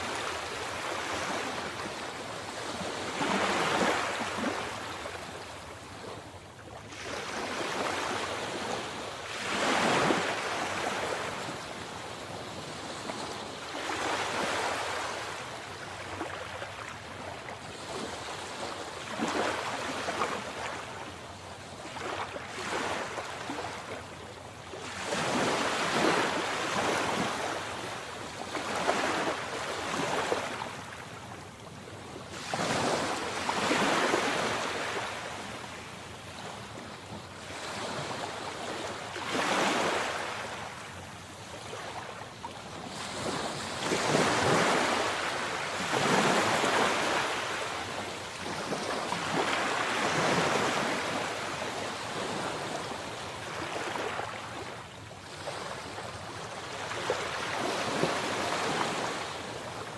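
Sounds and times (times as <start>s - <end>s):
sea waves breaking: 32.4s - 35.5s, 42.9s - 52.8s.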